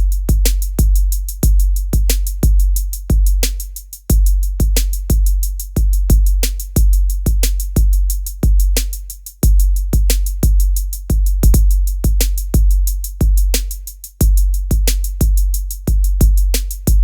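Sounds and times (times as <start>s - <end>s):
hi-hat ticks: 0.0s - 17.0s
booming bass kicks: 9.4s - 13.5s.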